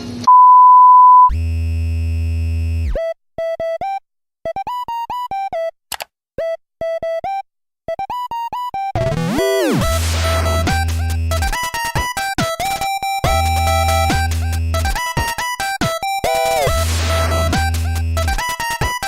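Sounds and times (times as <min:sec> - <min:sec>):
loud steady beep: 0:00.3 - 0:01.4
bouncy bleeping synth melody: 0:12.6 - 0:15.1.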